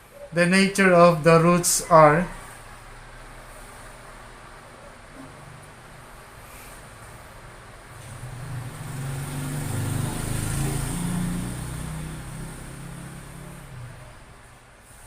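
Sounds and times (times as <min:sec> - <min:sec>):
vehicle engine hum passing by: 0:05.2 - 0:15.0.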